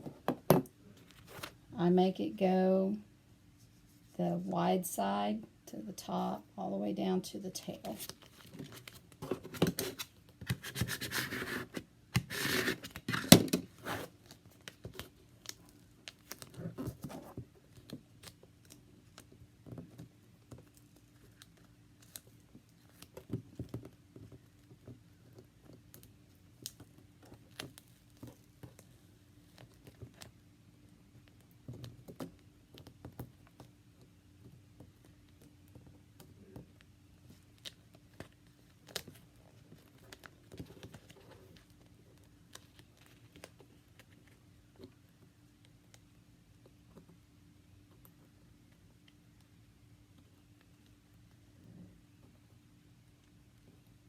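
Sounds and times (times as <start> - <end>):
faint steady hum: 0.0 - 54.0
tape scratching and crinkling: 7.9 - 19.3.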